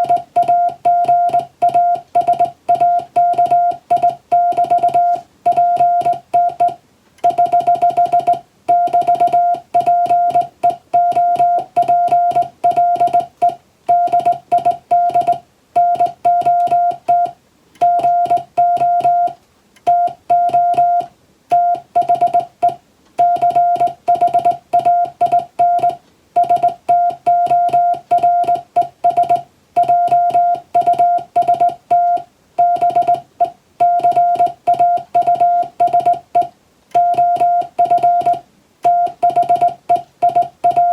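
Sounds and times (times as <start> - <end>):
morse code beeping tone: 0.0 - 40.9.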